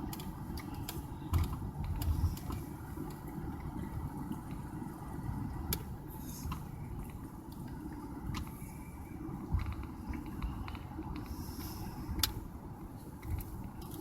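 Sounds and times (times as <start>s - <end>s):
car driving interior rumble: 0.0s - 14.0s.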